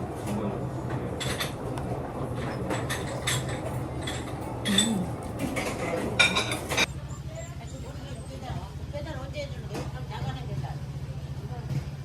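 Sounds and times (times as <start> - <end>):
dishes and cutlery clinking: 0.3 - 6.9.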